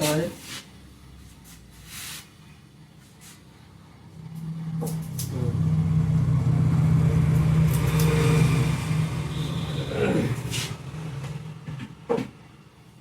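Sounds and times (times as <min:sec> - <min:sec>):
steady motor hum: 0:03.7 - 0:12.2.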